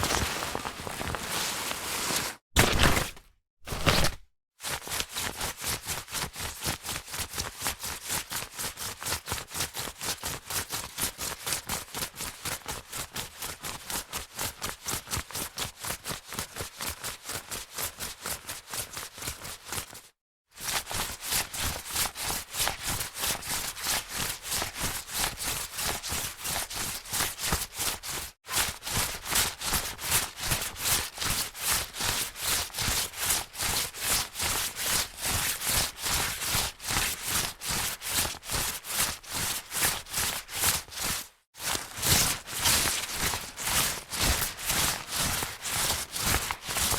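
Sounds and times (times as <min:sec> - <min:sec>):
jacket fabric swishing: 0:00.0 - 0:04.2.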